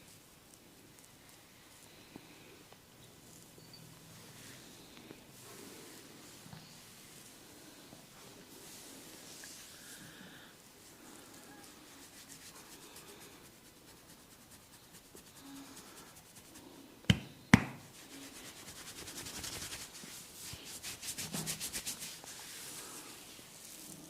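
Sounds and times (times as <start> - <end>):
hands rubbing skin in massage: 10.9 - 24.0.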